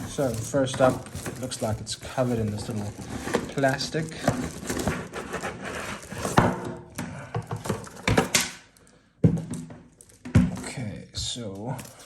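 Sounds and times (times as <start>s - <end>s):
plastic wrapping rustling: 0.0s - 6.6s
knocks and scrapes against box: 0.0s - 6.8s, 7.4s - 8.4s.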